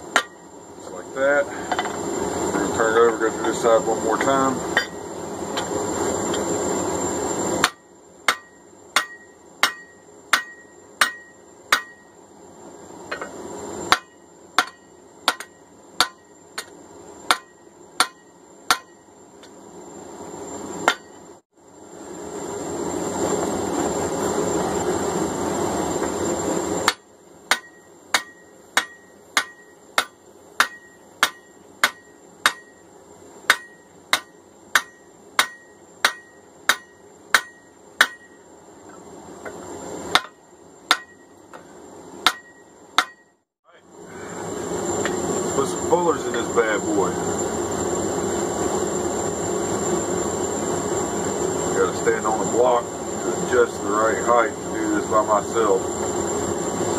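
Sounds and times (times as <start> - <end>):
hammer ringing on hot steel: 0.1 - 0.5, 2.9 - 5.0, 7.6 - 12.2, 13.1 - 19.1, 20.8 - 21.2, 26.8 - 38.5, 40.1 - 41.6, 42.2 - 43.4.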